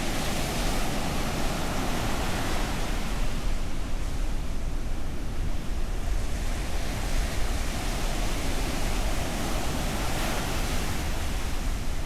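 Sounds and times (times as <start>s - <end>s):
waves breaking on beach: 0.0s - 4.0s, 6.5s - 12.0s.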